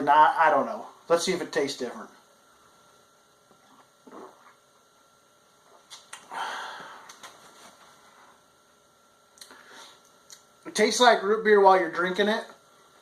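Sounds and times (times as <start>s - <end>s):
person drinking: 3.5s - 4.7s, 5.6s - 7.3s.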